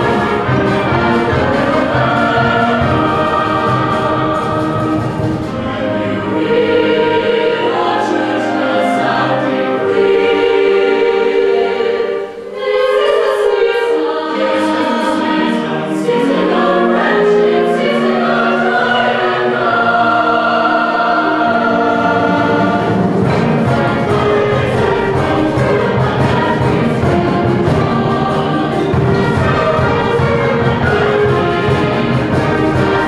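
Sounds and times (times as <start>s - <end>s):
concert ensemble sustained chords: 0.0s - 33.0s.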